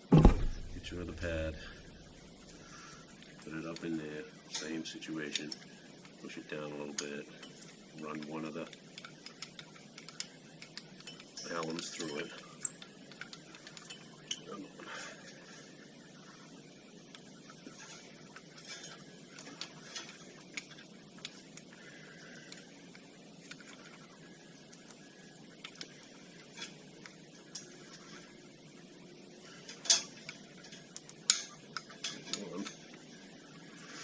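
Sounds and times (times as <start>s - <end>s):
metal parts clinking and clicking: 9.0s - 14.6s, 29.7s - 32.9s.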